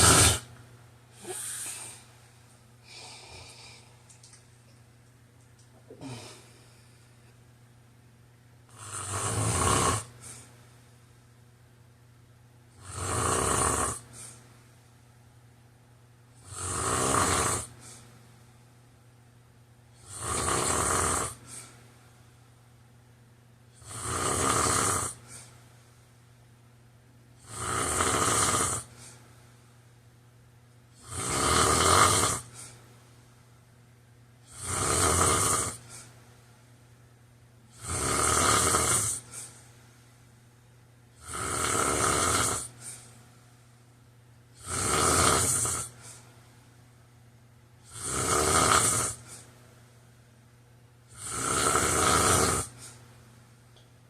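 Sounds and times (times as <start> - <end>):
person snoring loudly: 0.0 - 0.5, 1.2 - 2.0, 5.9 - 6.5, 8.7 - 10.4, 12.8 - 14.4, 16.4 - 18.0, 20.0 - 21.5, 23.8 - 25.2, 27.4 - 28.9, 31.0 - 32.8, 34.4 - 36.0, 37.7 - 39.4, 41.2 - 42.9, 44.6 - 46.2, 47.8 - 49.4, 51.1 - 53.0
faint low hum: 32.4 - 44.8.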